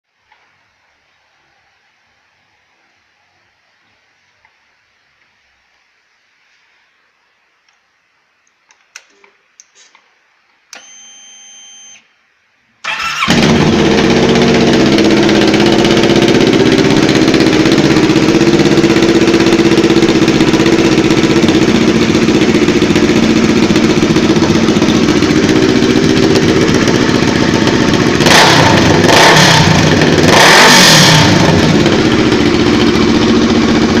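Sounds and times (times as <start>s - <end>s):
motorcycle engine idling loudly: 13.0s - 34.0s.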